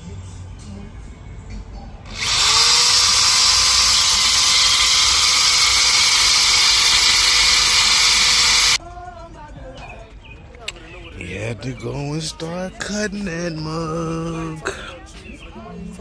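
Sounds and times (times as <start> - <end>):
power cutting tool whining: 2.1 - 8.8.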